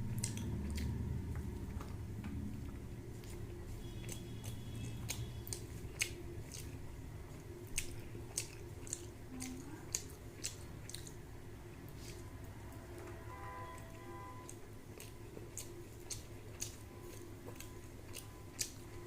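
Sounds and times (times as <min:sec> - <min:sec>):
low hum: 0:00.0 - 0:19.0
person chewing: 0:00.0 - 0:19.0
wet mouth clicks and smacks: 0:00.2 - 0:02.0, 0:07.7 - 0:09.1, 0:09.9 - 0:11.2.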